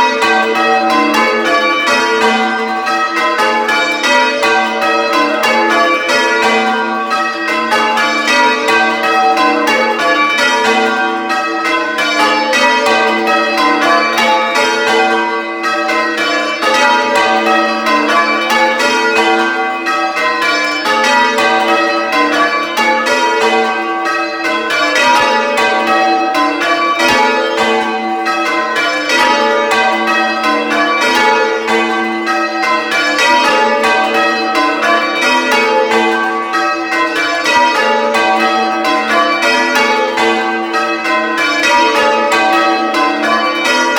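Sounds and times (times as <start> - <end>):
church bells ringing: 0.0 - 43.9.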